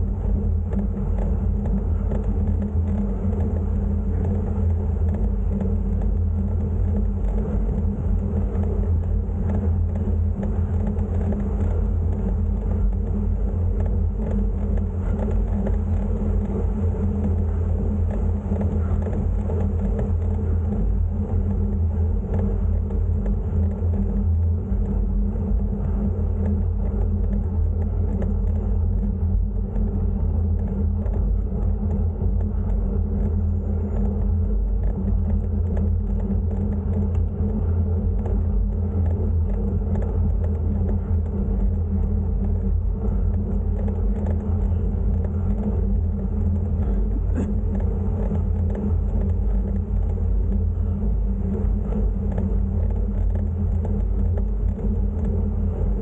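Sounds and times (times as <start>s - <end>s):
wind buffeting microphone: 0.0s - 56.0s.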